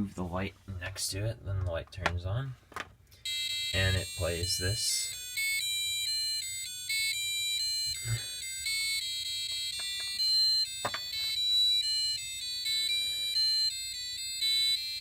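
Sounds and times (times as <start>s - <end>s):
electronic buzzer beeping melody: 3.2s - 15.0s.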